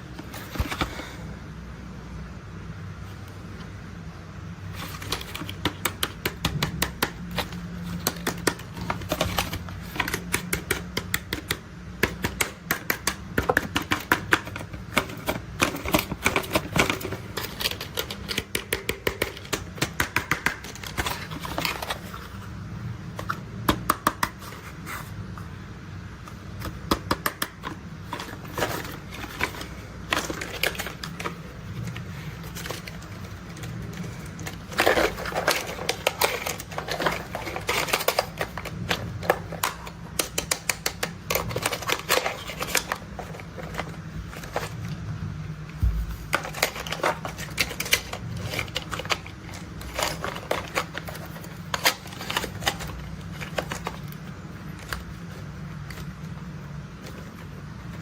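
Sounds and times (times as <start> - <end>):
faint low hum: 41.0 - 58.0.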